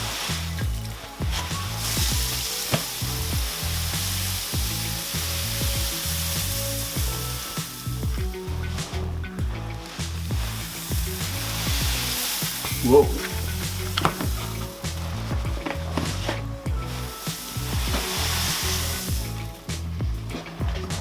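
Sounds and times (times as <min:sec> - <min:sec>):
background music with bass line: 0:00.0 - 0:21.0
steady hissing rush: 0:00.0 - 0:21.0.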